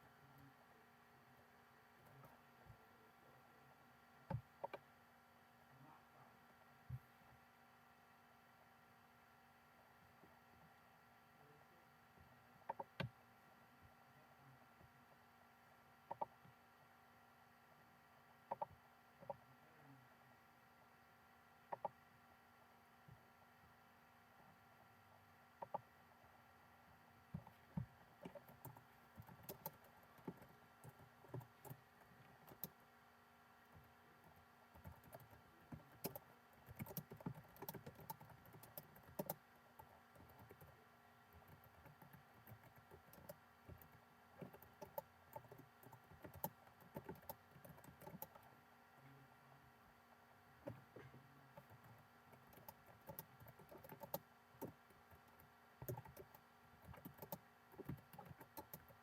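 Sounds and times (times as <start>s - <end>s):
faint steady hum: 0.0s - 59.0s
typing on computer keyboard: 12.7s - 13.1s, 27.4s - 32.8s, 33.7s - 48.5s, 51.6s - 59.0s.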